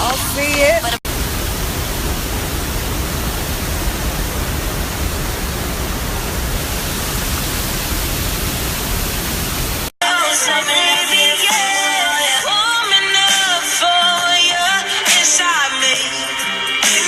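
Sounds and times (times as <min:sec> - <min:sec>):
waterfall roaring: 0:00.0 - 0:09.9.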